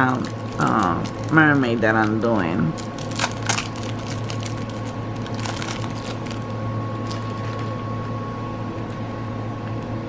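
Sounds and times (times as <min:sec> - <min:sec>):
packaging crinkling and clicking: 0:00.0 - 0:07.8
steady background hum: 0:00.0 - 0:10.0.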